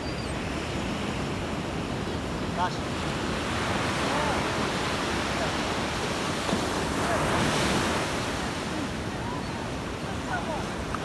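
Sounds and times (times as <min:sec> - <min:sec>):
sea surf washing onto shore: 0:02.4 - 0:11.0.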